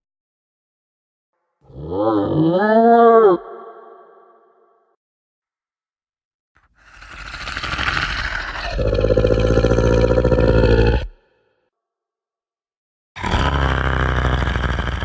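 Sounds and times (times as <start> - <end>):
monster growling and roaring: 1.7 - 4.2, 6.8 - 11.2, 13.2 - 15.0.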